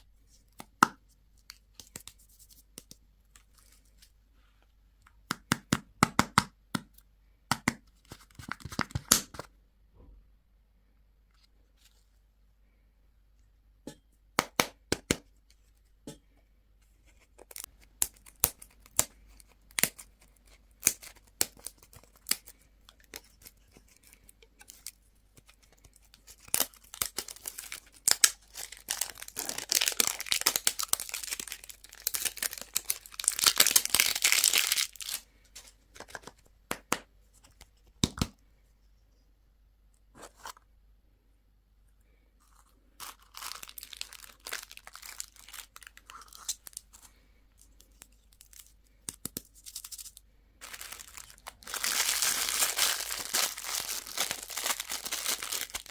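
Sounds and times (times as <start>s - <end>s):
candy wrappers crinkling and tearing: 17.3s - 35.4s, 42.4s - 55.9s.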